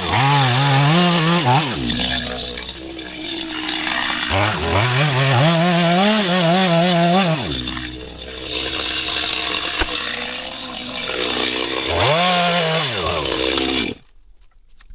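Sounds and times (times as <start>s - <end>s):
chainsaw engine idling and revving: 0.0s - 14.0s.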